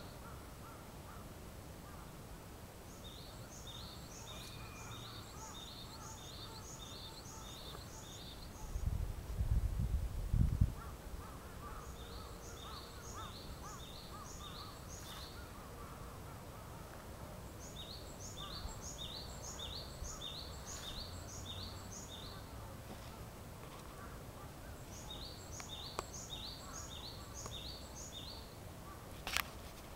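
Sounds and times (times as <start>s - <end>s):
faint lower bird calls: 2.8s - 9.0s, 10.8s - 29.2s
bird singing two-note song: 4.3s - 5.8s.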